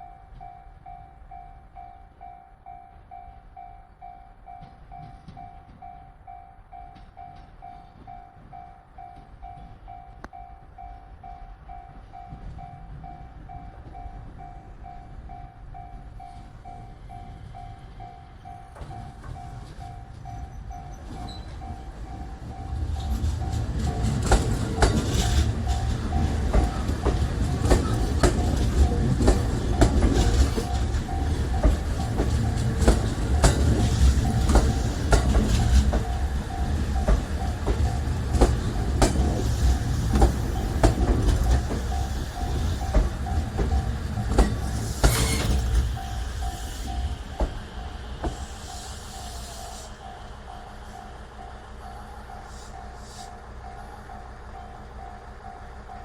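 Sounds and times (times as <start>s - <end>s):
crossing warning bell ringing: 0.0s - 56.0s
train wheels clattering over rail joints: 18.0s - 50.0s.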